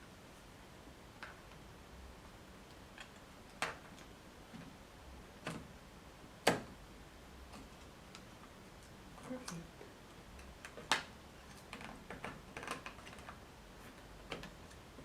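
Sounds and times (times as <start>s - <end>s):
laptop parts clicking and tapping: 10.4s - 13.4s, 14.0s - 14.8s.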